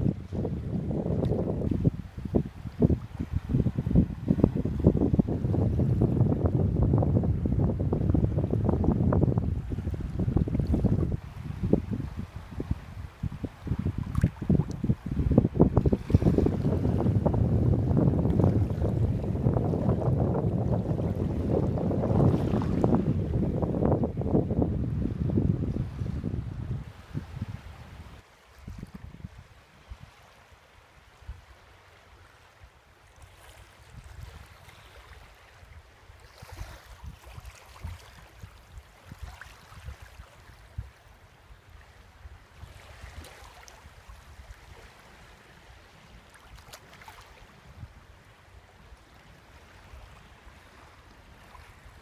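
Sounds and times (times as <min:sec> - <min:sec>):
wind buffeting microphone: 0:00.0 - 0:30.2, 0:33.4 - 0:41.0
small waves washing onto beach: 0:00.0 - 0:52.0.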